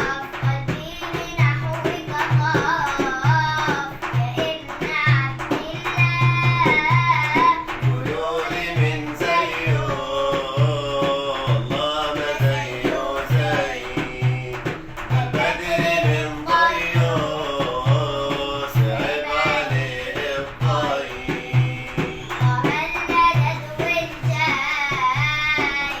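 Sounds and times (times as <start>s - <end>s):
repeating drum beat: 0.0s - 26.0s
devotional song melody: 6.8s - 25.3s.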